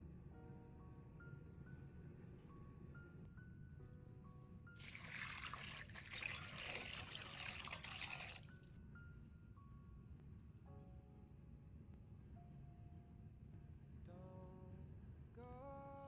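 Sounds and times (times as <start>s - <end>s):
water running: 4.8s - 8.5s.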